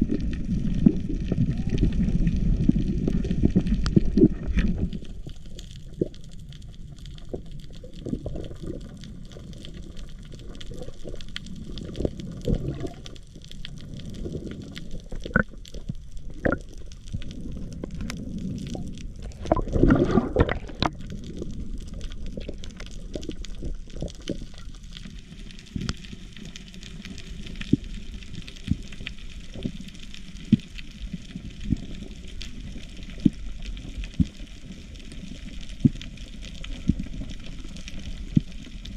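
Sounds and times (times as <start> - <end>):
water sloshing and gurgling: 0.0 - 29.8
water bubbling or splashing: 0.0 - 38.9.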